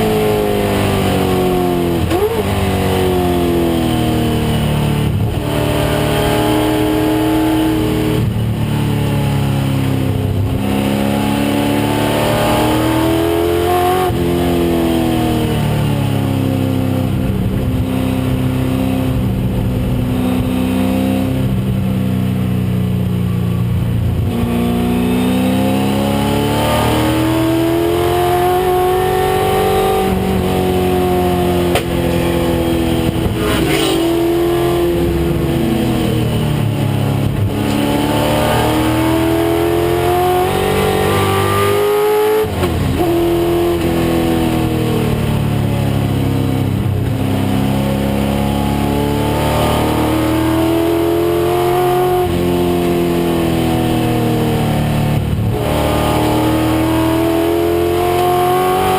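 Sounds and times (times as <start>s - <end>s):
race car engine accelerating: 0.0s - 21.7s, 24.1s - 58.9s.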